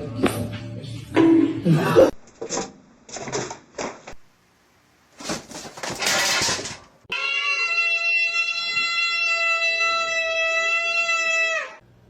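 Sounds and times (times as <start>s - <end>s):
cat meowing: 7.1s - 11.8s.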